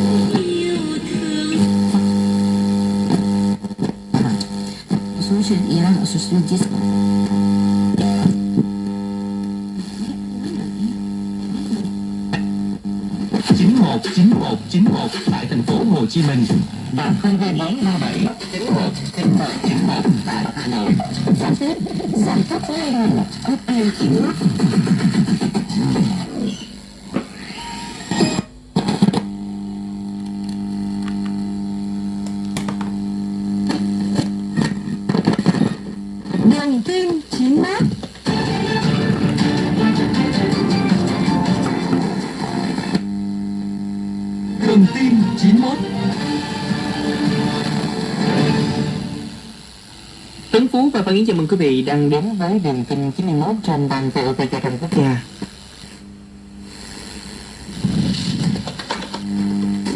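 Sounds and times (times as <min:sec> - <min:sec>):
guitar music from radio speaker: 0:00.0 - 0:05.6, 0:16.5 - 0:22.6, 0:37.9 - 0:43.1, 0:44.4 - 0:49.9
loudspeaker buzzing hum: 0:00.0 - 0:27.4, 0:28.4 - 0:47.2
clicks: 0:32.2 - 0:33.0
crackles: 0:56.7 - 0:59.9.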